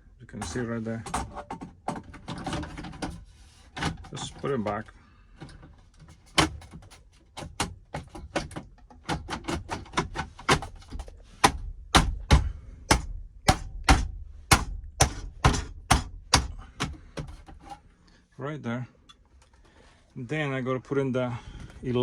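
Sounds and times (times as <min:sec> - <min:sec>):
knocking on plastic trim: 0:09.2 - 0:17.6.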